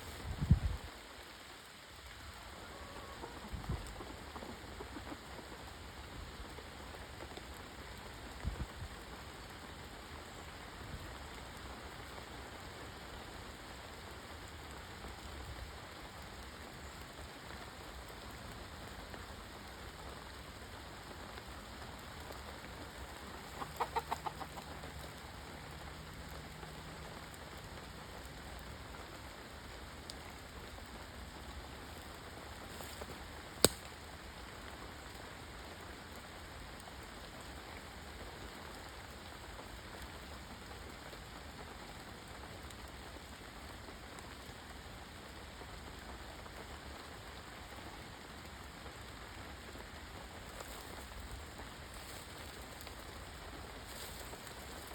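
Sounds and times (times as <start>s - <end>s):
chicken clucking: 23.1s - 25.0s.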